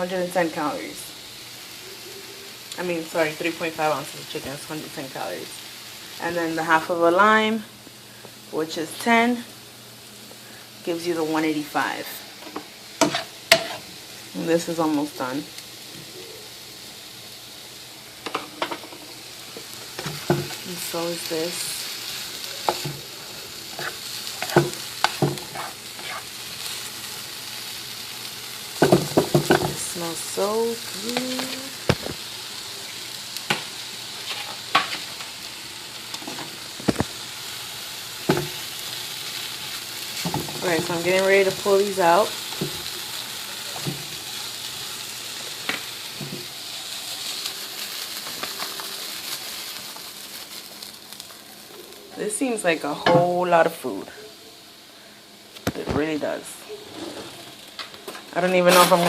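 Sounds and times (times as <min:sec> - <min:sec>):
food sizzling in a pan: 0:00.0 - 0:59.0
utensil scraping a pan: 0:12.4 - 0:13.9, 0:23.7 - 0:26.3, 0:34.2 - 0:35.0, 0:56.8 - 0:57.5.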